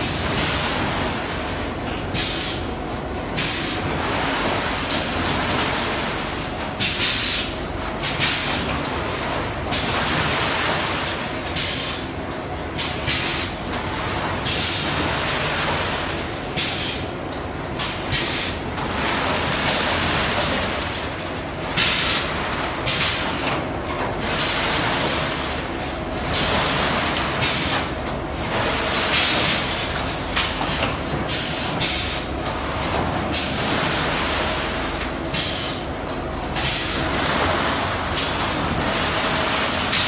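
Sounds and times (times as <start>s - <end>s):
machinery running: 0.0s - 40.0s.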